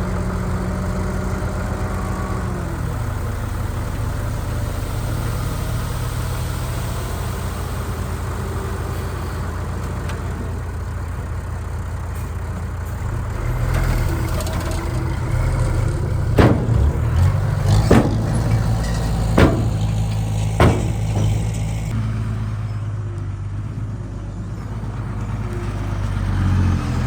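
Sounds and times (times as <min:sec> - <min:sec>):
heavy diesel machine running: 0:00.0 - 0:27.0
sharp metallic clanks: 0:16.3 - 0:22.0.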